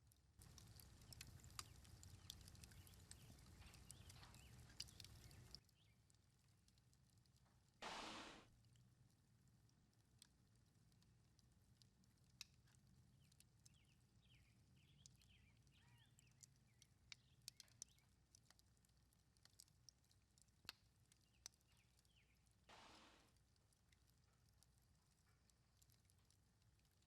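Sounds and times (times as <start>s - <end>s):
faint bird chirps: 0.9s - 6.0s, 13.7s - 18.1s.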